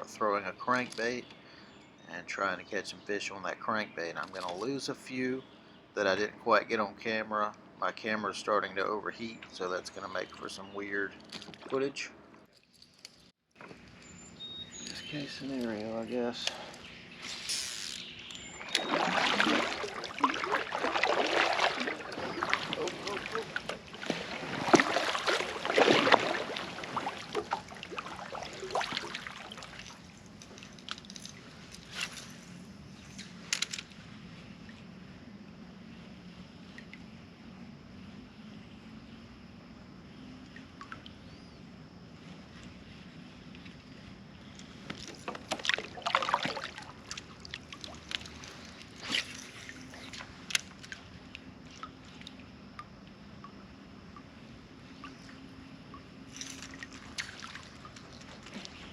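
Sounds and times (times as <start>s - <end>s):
water splashing at a kayak: 17.4s - 32.2s, 42.2s - 58.9s
water dripping: 18.3s - 31.3s, 50.0s - 58.7s.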